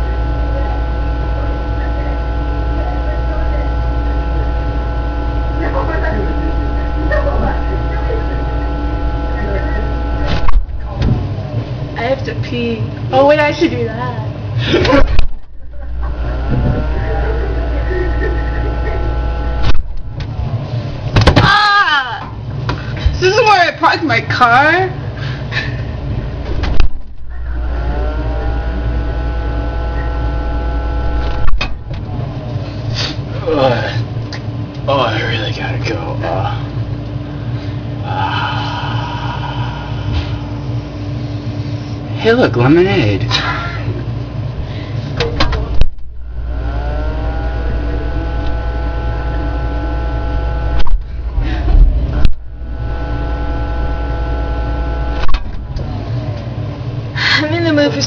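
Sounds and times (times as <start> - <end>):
small appliance motor humming: 0.0 - 58.0
appliance starting thump: 10.2 - 11.4, 14.7 - 15.7, 16.3 - 17.2, 21.0 - 21.6, 26.4 - 28.2, 31.1 - 32.2, 45.1 - 46.2, 50.7 - 52.6, 55.1 - 56.0
motor clicks: 47.5 - 48.6.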